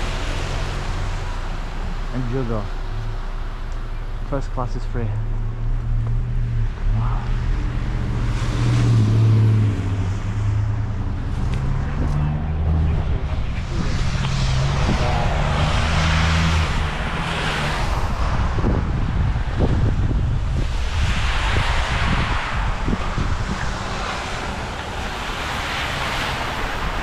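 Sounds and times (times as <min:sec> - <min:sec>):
car passing with a hiss: 0:06.3 - 0:27.0.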